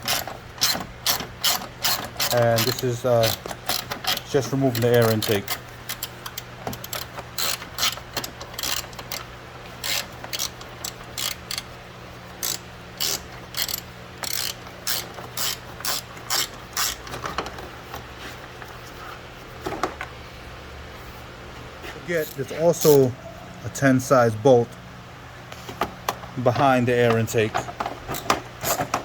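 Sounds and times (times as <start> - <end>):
hand ratchet clicking: 0.0 - 11.7, 12.4 - 17.3.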